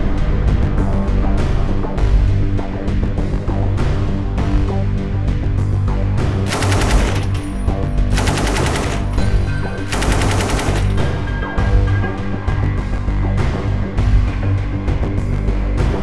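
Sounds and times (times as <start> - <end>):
background music: 0.0 - 16.0
machine gun bursts: 6.5 - 11.2.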